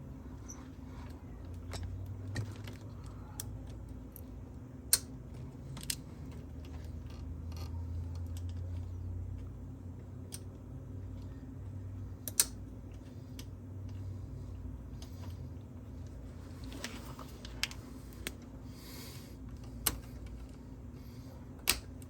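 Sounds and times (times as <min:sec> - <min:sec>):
low steady hum: 0:00.0 - 0:22.0
light metallic clicks and taps: 0:04.9 - 0:14.1.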